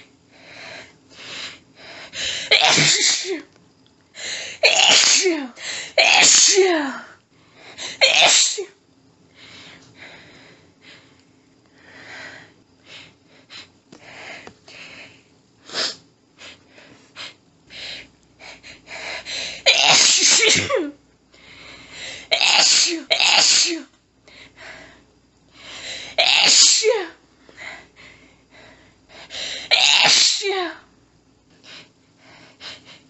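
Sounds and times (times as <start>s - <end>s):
woman sneezing: 2.4s - 3.5s, 4.6s - 7.0s, 7.9s - 8.7s, 19.6s - 21.0s, 22.3s - 23.9s, 26.2s - 27.2s, 29.7s - 30.8s.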